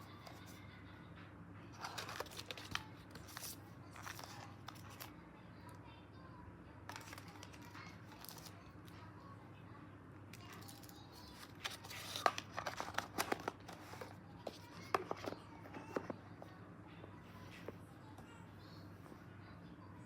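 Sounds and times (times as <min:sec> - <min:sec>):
packaging crinkling: 0:01.8 - 0:05.1, 0:06.9 - 0:08.5, 0:10.5 - 0:16.1
packaging tearing: 0:01.8 - 0:05.1, 0:10.6 - 0:14.1.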